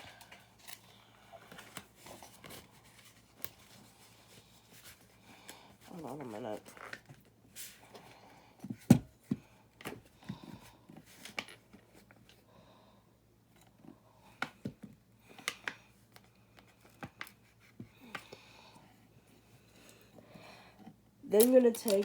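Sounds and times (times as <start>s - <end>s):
plastic bricks clicking and rustling: 21.4s - 22.0s.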